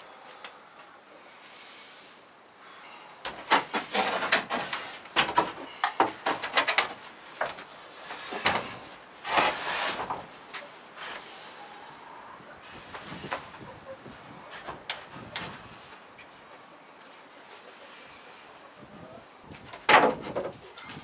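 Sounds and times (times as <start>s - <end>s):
wooden boards scraping: 3.3s - 11.5s, 19.5s - 21.0s
wooden boards knocking: 19.8s - 21.0s.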